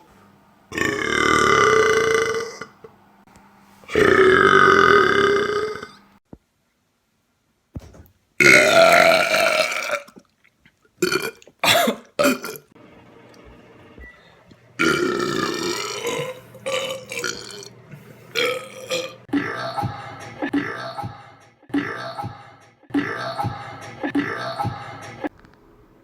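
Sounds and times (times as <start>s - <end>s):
human burps: 0.7s - 2.8s, 3.9s - 6.0s, 8.4s - 10.2s, 11.0s - 12.7s, 14.8s - 17.7s, 18.3s - 19.6s.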